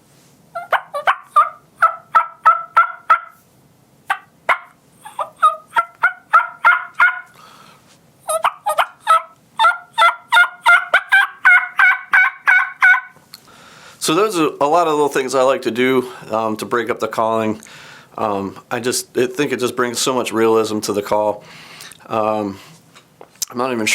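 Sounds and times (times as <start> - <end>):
turkey call yelping: 0.6 - 3.4, 4.1 - 7.4, 8.2 - 13.2.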